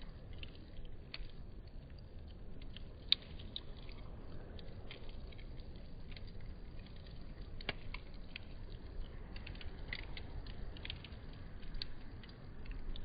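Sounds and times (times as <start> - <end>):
campfire crackling: 0.0 - 13.0.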